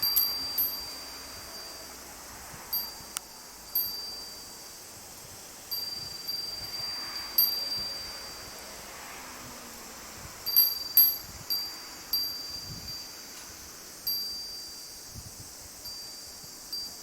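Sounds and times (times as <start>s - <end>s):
high-pitched metal chime: 0.0s - 2.0s, 5.7s - 8.6s.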